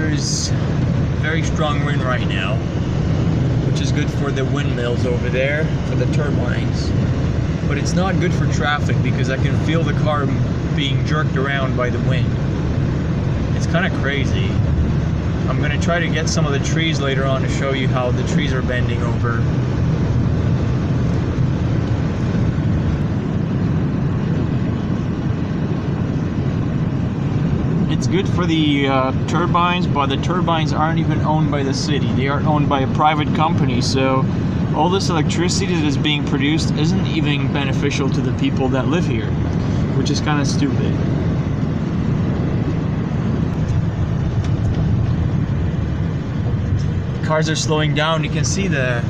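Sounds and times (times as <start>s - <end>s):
car driving in strong wind: 0.0s - 49.0s.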